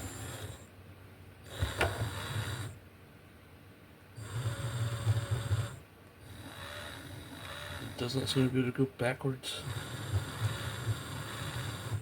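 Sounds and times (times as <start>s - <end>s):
small electric motors whirring: 6.5s - 8.0s.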